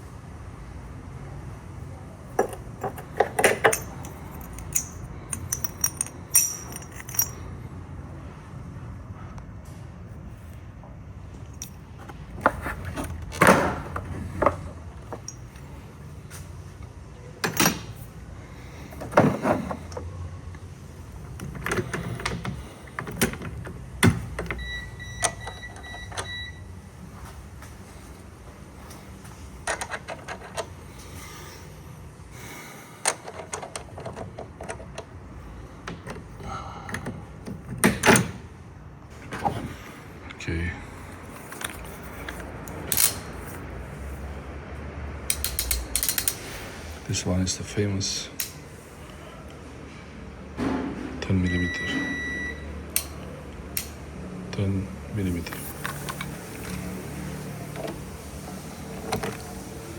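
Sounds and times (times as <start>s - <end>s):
metallic clatter of hand tools: 2.4s - 7.5s, 45.3s - 46.4s
high beep: 51.5s - 52.7s.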